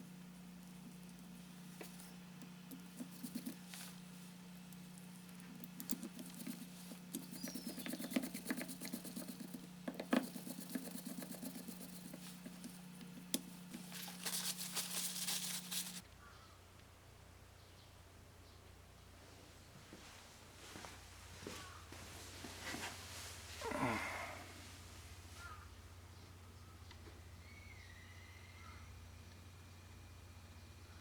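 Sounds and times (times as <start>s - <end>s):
steady hum: 0.0s - 16.2s
small clicks taps and rustles: 4.5s - 14.4s.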